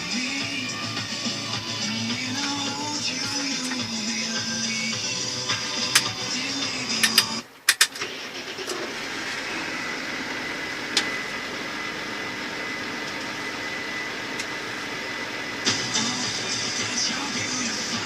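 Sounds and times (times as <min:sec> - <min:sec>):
music: 0:00.0 - 0:07.4, 0:15.5 - 0:18.0
high-pitched whine: 0:00.0 - 0:07.5, 0:08.3 - 0:18.0
farm machinery engine running: 0:01.2 - 0:18.0.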